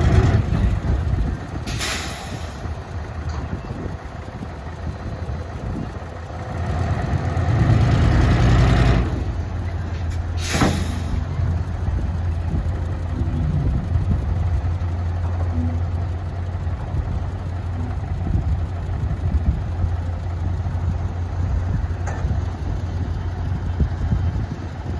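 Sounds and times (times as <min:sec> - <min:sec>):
diesel engine idling: 0:00.0 - 0:24.9
brief hiss: 0:10.4 - 0:11.1.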